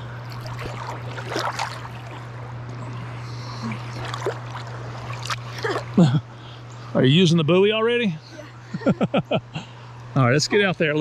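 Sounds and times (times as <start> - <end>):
water splashing and sloshing: 0.0 - 6.0
low steady hum: 0.0 - 11.0.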